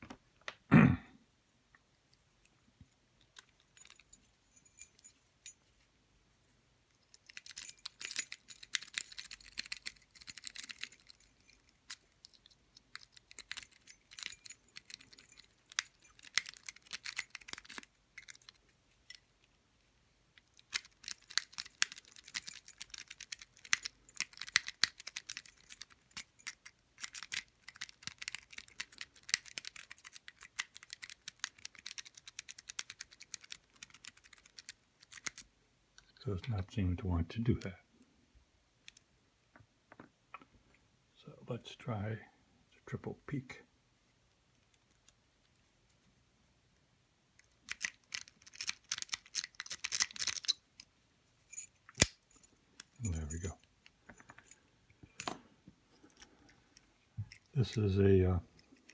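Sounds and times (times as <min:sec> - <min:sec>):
lock pick scratching in padlock: 0:07.0 - 0:19.3, 0:20.4 - 0:35.4, 0:47.4 - 0:50.9, 0:51.6 - 0:53.5.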